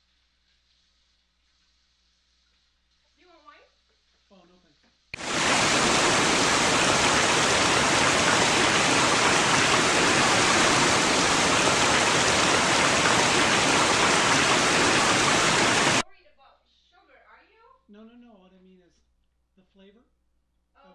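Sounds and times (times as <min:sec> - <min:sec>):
loud steady noise hiss: 0:05.2 - 0:16.0.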